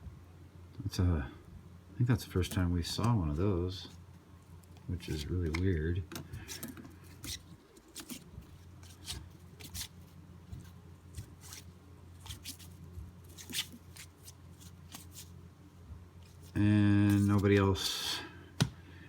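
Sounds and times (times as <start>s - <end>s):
steady low hum: 0.0s - 19.0s
cards clicking and rustling: 4.4s - 15.4s, 16.2s - 17.7s.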